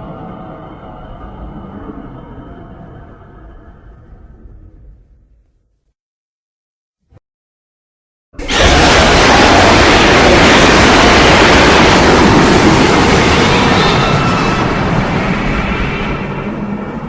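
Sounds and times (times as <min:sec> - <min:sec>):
loud dense rushing noise: 0:08.4 - 0:17.0.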